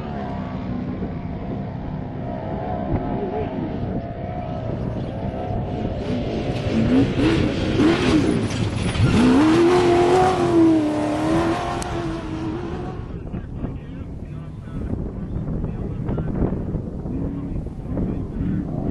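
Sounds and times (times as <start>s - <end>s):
race vehicle engine revving: 0.0s - 13.5s.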